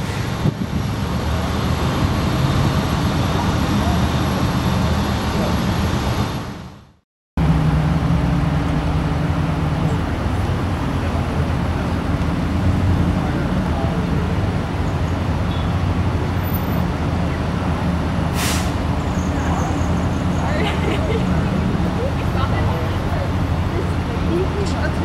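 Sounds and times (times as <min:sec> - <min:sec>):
air brake hiss: 0:18.3 - 0:18.8.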